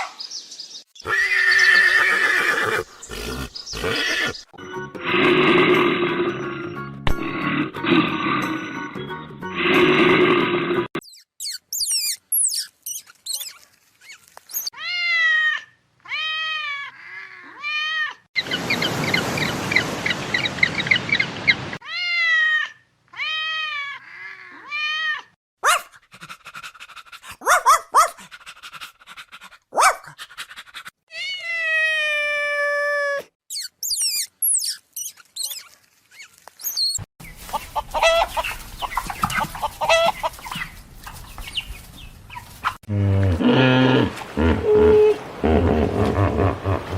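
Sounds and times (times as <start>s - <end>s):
high arched animal calls: 1.0s - 4.5s, 10.9s - 15.0s, 33.5s - 40.8s
low rough animal call: 42.8s - 46.9s
long falling animal call: 42.9s - 46.9s.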